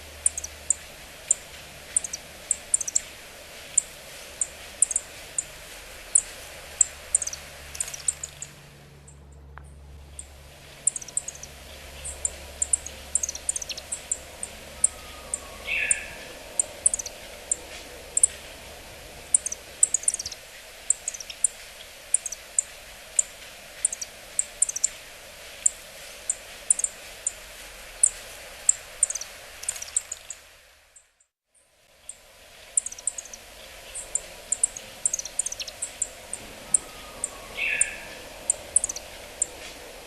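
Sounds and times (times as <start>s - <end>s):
bird high-pitched call notes: 0.2s - 1.4s, 2.0s - 3.1s, 3.8s - 5.5s, 10.9s - 18.4s, 19.3s - 21.5s, 32.8s - 39.6s
lower bird note: 36.2s - 40.0s.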